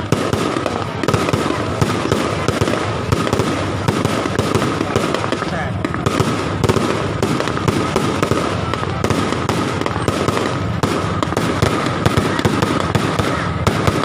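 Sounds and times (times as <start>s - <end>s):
firecrackers cracking and popping: 0.0s - 14.0s.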